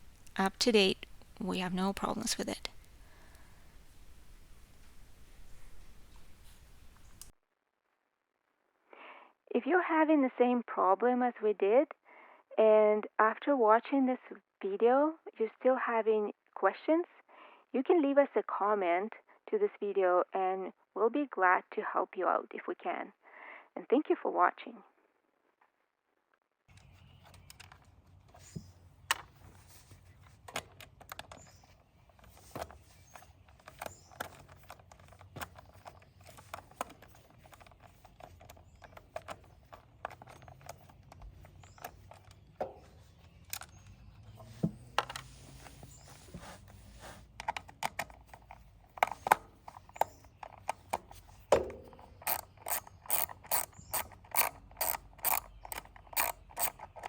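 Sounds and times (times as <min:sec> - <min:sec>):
hand tools clicking and knocking: 0:47.4 - 0:57.0
ratchet wrench clicking: 0:52.2 - 0:57.0.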